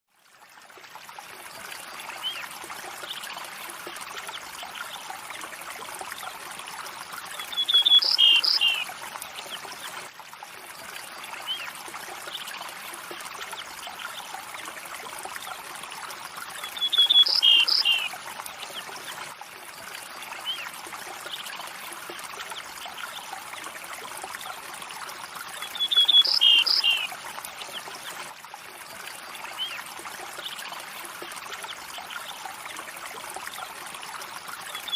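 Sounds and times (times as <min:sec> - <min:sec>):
stream flowing: 0:00.1 - 0:34.9
bird call: 0:07.5 - 0:08.8, 0:25.8 - 0:27.1.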